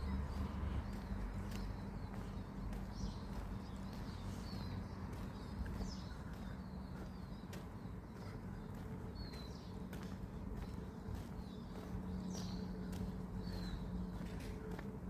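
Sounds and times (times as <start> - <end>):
footsteps walking: 0.0 - 15.0
songbirds chirping: 0.0 - 15.0
steady low hum: 0.0 - 15.0.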